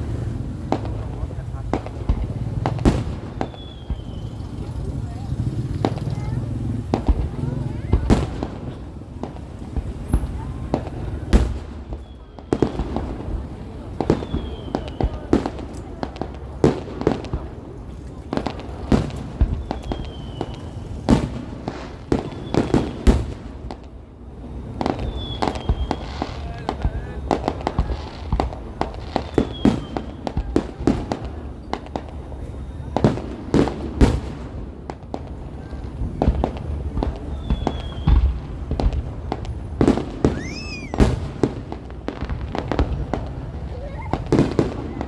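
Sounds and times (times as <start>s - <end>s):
fireworks banging: 0.0s - 45.0s
small firework crackles: 0.0s - 45.0s
firework whistle: 3.2s - 4.8s, 14.1s - 15.3s, 19.4s - 21.1s, 24.9s - 27.9s, 29.3s - 30.2s, 37.2s - 38.4s, 39.9s - 41.6s.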